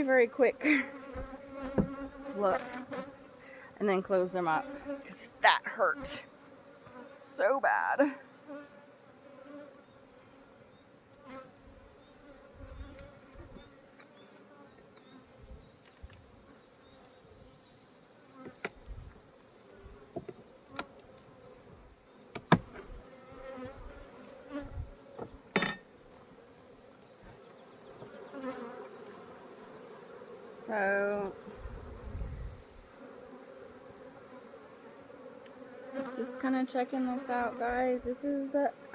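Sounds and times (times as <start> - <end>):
bees buzzing: 0.0 - 38.9
sharp clicks or knocks: 22.3 - 22.7.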